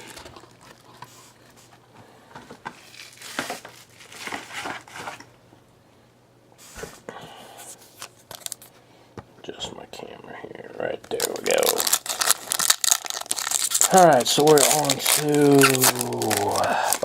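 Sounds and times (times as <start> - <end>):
foil wrappers crinkling and tearing: 2.8 - 5.2, 8.3 - 8.7, 11.0 - 17.0.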